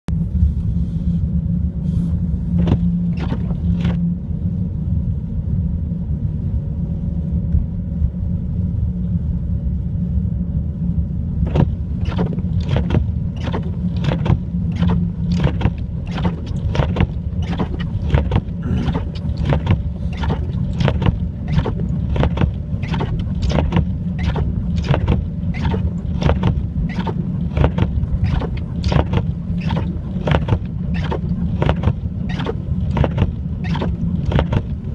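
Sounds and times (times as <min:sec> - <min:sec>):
short sharp crunches: 0:11.5 - 0:34.7.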